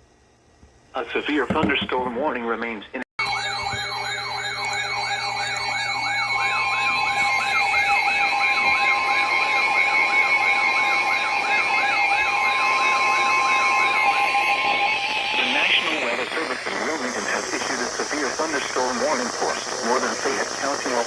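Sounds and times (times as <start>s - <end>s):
electronic siren yelping: 3.2s - 16.3s
high alert tone: 3.2s - 16.6s.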